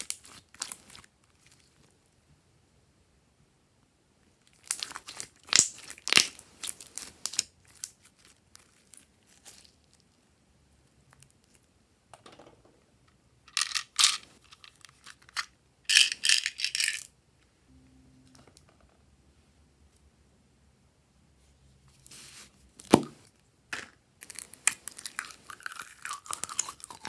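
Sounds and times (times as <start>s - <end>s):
slime clicking and crackling: 4.5s - 8.8s, 24.2s - 27.0s.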